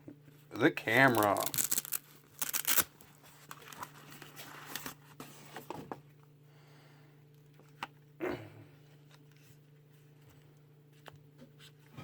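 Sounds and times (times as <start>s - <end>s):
low steady hum: 0.0s - 12.0s
packaging rustling: 1.0s - 5.0s.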